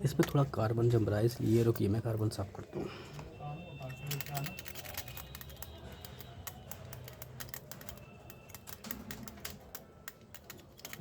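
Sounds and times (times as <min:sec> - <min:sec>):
small tool scraping metal contacts: 0:03.8 - 0:11.0.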